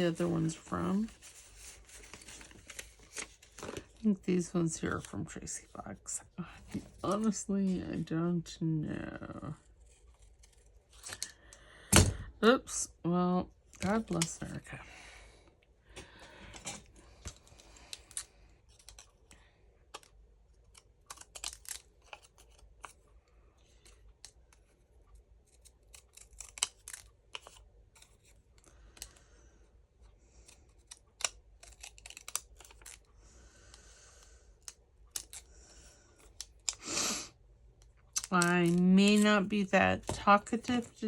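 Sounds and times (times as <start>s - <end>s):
paper rustling: 0.0s - 4.1s
scissors snipping paper: 19.9s - 23.0s, 25.4s - 29.2s, 30.3s - 33.1s, 34.6s - 36.8s, 38.1s - 41.0s.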